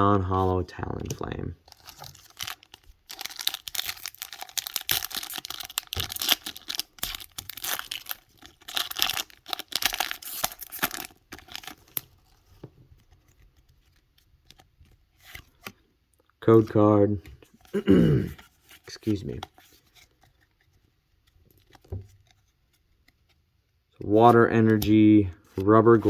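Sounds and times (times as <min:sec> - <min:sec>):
faint handling sounds: 0:00.3 - 0:26.0
foil wrapper tearing and crinkling: 0:01.7 - 0:12.2.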